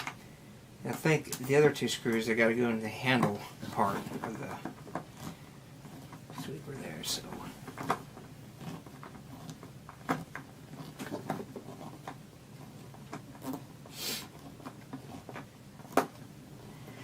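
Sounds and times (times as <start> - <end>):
plastic parts clicking and knocking: 3.1 - 6.6, 7.6 - 13.7, 14.4 - 16.3.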